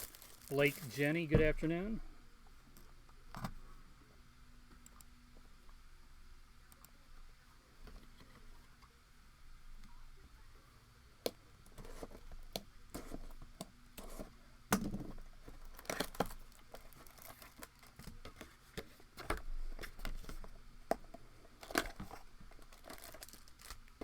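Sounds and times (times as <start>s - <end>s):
plastic wrapping tearing and crinkling: 0.0s - 1.1s, 15.6s - 18.2s, 21.6s - 24.0s.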